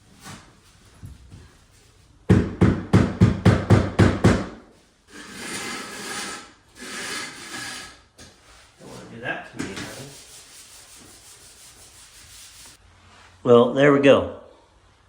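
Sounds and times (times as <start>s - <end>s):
scraping sweeps across tile: 4.8s - 13.4s.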